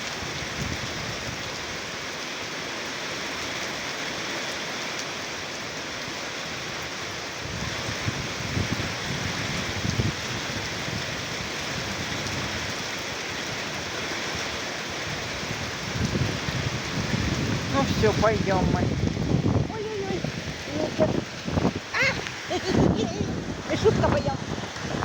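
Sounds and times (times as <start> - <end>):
steady rain falling: 0.0 - 25.0
wind buffeting microphone: 0.1 - 1.7, 7.2 - 25.0.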